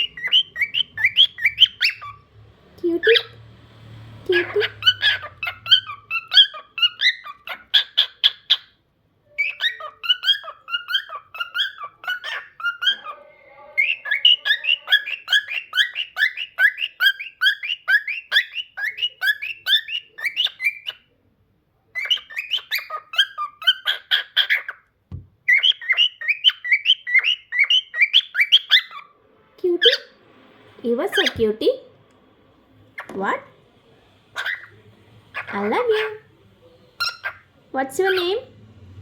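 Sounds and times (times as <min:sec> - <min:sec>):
cockatiel chirping: 0:00.0 - 0:02.2, 0:04.3 - 0:21.1, 0:21.9 - 0:29.1, 0:31.1 - 0:31.4, 0:34.3 - 0:36.3, 0:37.0 - 0:38.4
soft bump: 0:25.1 - 0:25.4.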